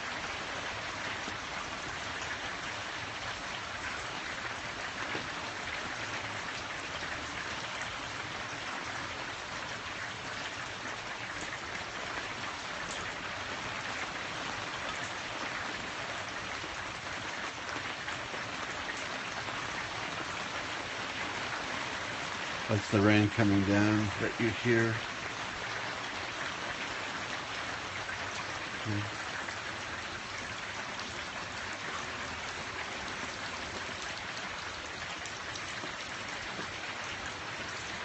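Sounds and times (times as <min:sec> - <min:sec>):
steady rain hiss: 0:00.0 - 0:38.0.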